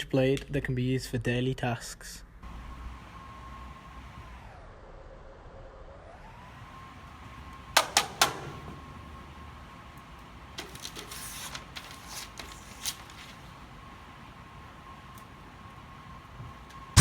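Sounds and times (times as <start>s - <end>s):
faint high hum: 2.4s - 4.6s.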